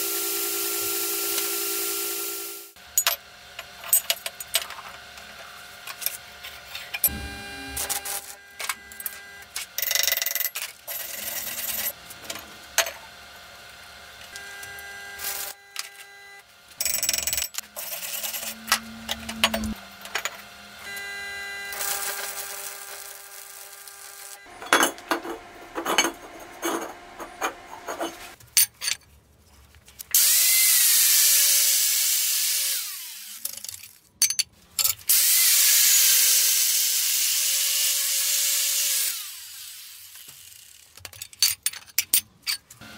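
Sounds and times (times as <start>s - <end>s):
power tool working metal: 0.0s - 28.4s, 30.2s - 33.5s, 35.1s - 40.9s
metal parts clinking: 7.8s - 11.9s, 16.8s - 20.4s, 33.4s - 35.1s, 40.7s - 42.8s.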